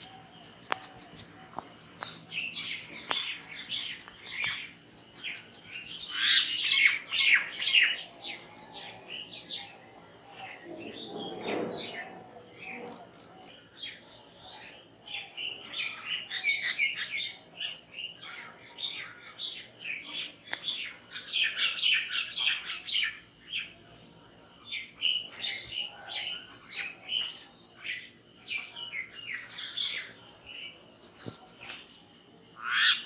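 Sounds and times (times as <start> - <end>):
small birds chirping: 0.0 - 33.0.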